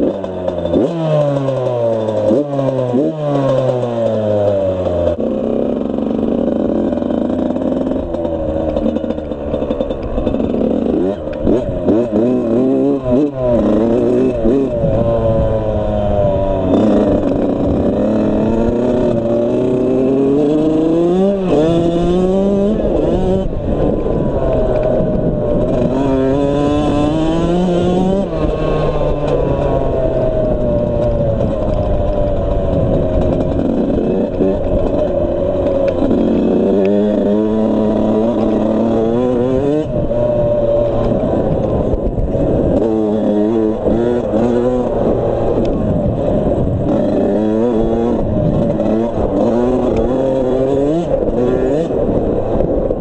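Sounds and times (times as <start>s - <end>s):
two-stroke motorcycle engine revving: 0.0s - 53.0s.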